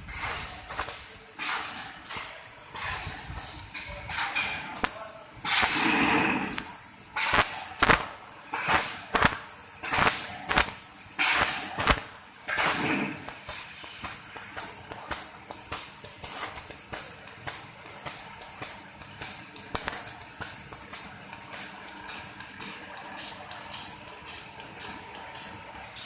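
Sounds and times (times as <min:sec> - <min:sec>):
rushes of air hiss: 0:00.0 - 0:14.3
short sharp cracks: 0:04.8 - 0:12.9.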